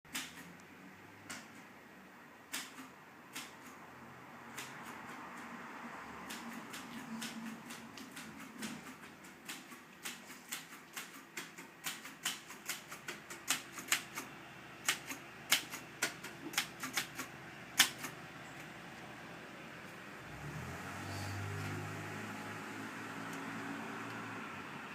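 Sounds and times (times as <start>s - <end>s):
typewriter keys clicking: 6.2s - 18.2s.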